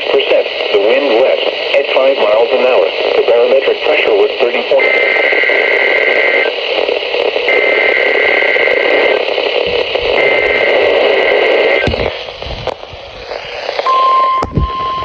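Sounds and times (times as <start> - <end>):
radio static: 0.0 - 14.8
digital data tone bursts: 13.0 - 15.0.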